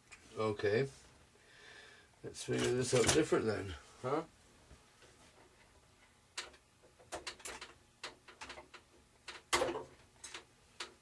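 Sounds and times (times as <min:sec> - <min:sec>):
light clicks taps and rustles: 0:05.0 - 0:11.0.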